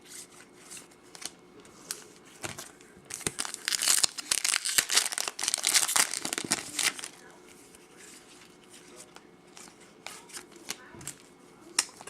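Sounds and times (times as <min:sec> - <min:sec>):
foil wrapper tearing and crinkling: 0:03.1 - 0:07.2.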